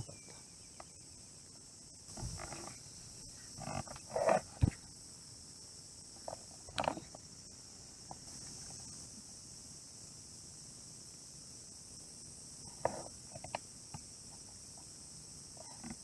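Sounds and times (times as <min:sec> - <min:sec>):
rustles: 0:00.0 - 0:05.2
insects chirring: 0:00.0 - 0:16.0.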